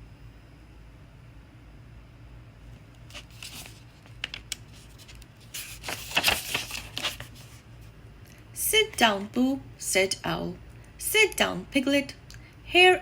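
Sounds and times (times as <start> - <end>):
book pages turning: 3.0 - 7.7.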